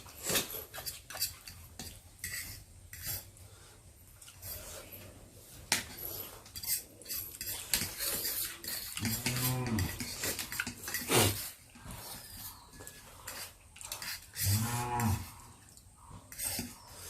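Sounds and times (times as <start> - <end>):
utensils clinking against bowls: 5.7 - 15.3.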